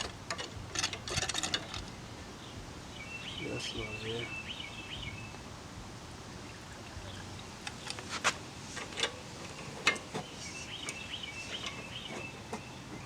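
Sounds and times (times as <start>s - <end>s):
outdoor background noise: 0.0s - 13.0s
small birds chirping: 1.8s - 5.5s, 9.4s - 13.0s.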